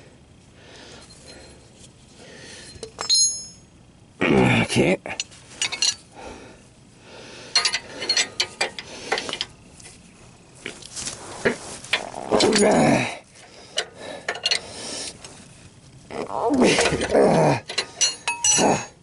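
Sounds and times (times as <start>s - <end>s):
ratcheting wrench clicks: 7.5s - 9.5s, 13.8s - 15.2s, 16.8s - 18.8s
loud groan-like sound: 16.1s - 17.7s.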